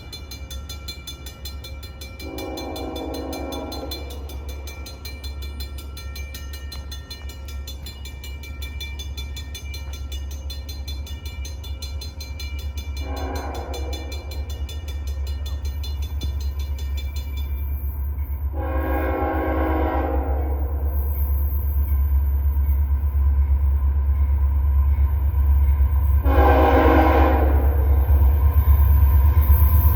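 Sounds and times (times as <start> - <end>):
low train rumble: 0.0 - 29.9
locomotive horn blasts: 2.2 - 4.3, 13.0 - 14.3, 18.5 - 20.9, 26.2 - 28.0.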